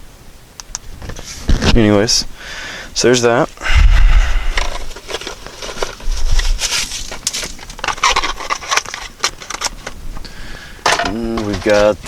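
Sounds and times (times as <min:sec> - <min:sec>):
low rumble: 0:03.6 - 0:04.9
rustling and crackling of items: 0:04.3 - 0:12.0.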